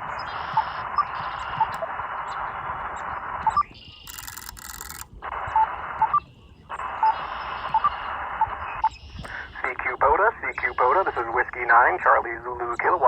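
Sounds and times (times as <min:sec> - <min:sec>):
radio static hiss: 0:00.0 - 0:13.0
short chirp-like tones: 0:03.4 - 0:06.2.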